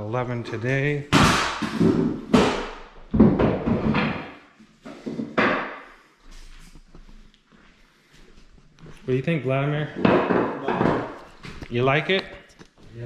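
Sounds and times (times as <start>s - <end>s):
knocks on wooden flooring: 1.1s - 5.8s, 10.0s - 11.5s.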